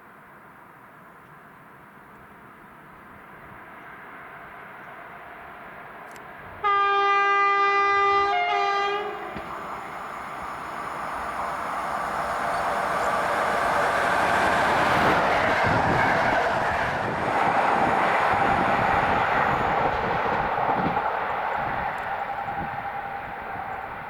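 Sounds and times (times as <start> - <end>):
train passing on rails: 0.5 - 24.0.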